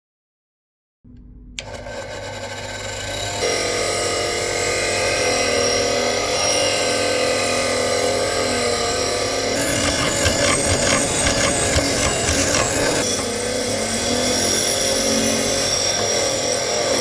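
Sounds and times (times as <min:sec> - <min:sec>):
power tool whine: 0:01.6 - 0:17.0
scraping on metal: 0:09.6 - 0:13.1.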